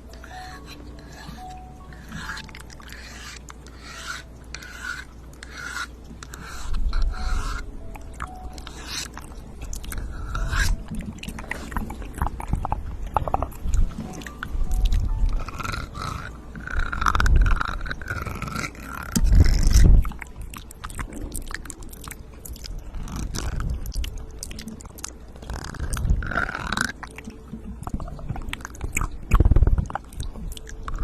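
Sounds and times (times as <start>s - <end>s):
rubbing and scraping: 0.0s - 20.2s
wet mouth clicks: 5.0s - 31.0s.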